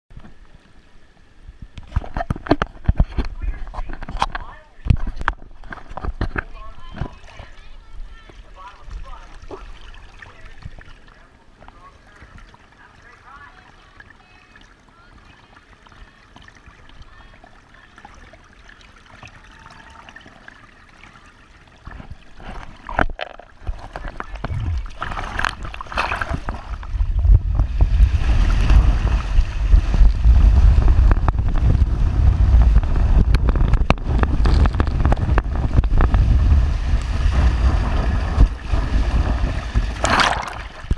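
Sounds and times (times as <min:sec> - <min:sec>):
rushing water: 0:00.3 - 0:40.9
wind buffeting microphone: 0:23.6 - 0:40.9.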